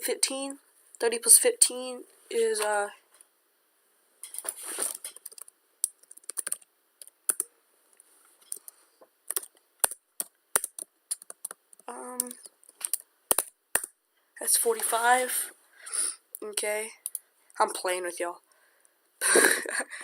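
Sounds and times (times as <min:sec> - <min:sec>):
keyboard typing: 0:05.0 - 0:07.5, 0:08.4 - 0:13.9.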